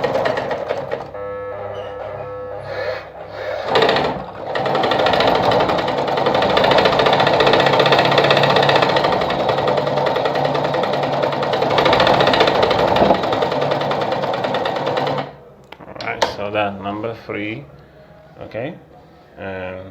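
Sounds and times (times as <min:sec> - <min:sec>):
sewing machine running: 0:00.0 - 0:01.2, 0:02.5 - 0:15.4.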